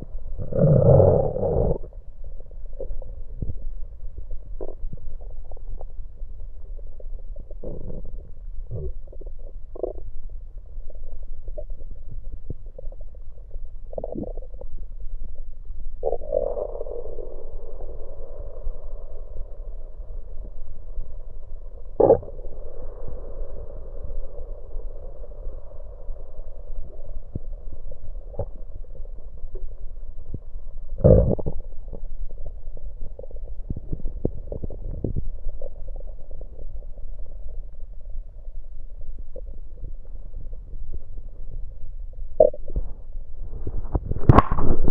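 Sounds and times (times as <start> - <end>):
low steady hum: 0.0 - 44.9
stomach gurgling: 0.0 - 44.9.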